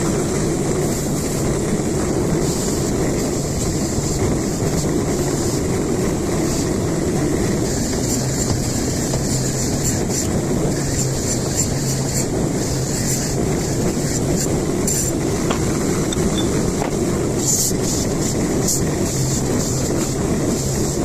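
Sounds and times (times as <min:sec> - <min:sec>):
loud mechanical running noise: 0:00.0 - 0:21.0.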